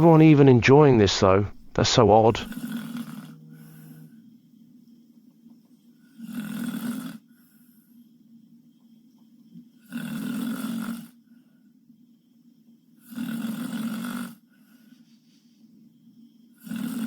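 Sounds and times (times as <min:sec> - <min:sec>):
woman snoring: 0:06.1 - 0:07.3, 0:09.8 - 0:11.2, 0:13.0 - 0:14.4, 0:16.6 - 0:17.0.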